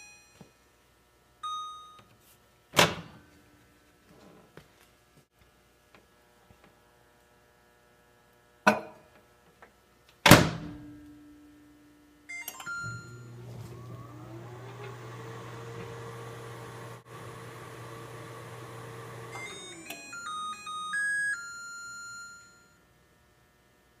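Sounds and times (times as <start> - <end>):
microwave oven humming: 10.8 - 22.8
short keypad beeps: 12.3 - 13.2
microwave click: 12.5 - 20.3
microwave door shutting: 12.6 - 20.2.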